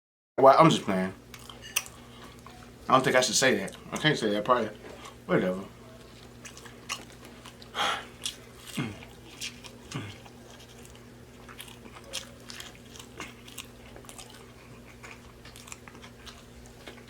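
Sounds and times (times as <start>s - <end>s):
steady low hum: 0.4s - 17.0s
chewing and mouth smacking: 1.3s - 2.8s, 6.0s - 17.0s.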